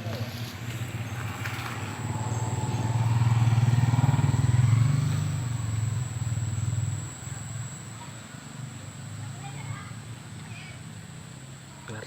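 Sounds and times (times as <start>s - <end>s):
motorcycle engine passing: 0.0s - 9.5s.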